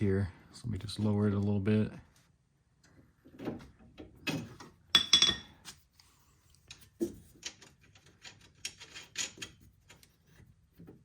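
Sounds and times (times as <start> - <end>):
metal parts clinking and knocking: 6.7 - 10.0.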